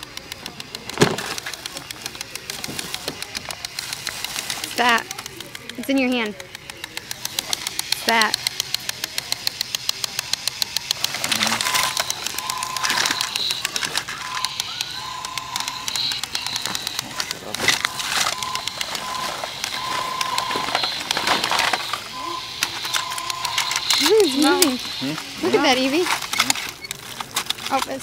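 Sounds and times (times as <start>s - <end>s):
clockwork toy ticking: 0.0s - 28.0s
short high electronic beeps: 11.2s - 25.8s.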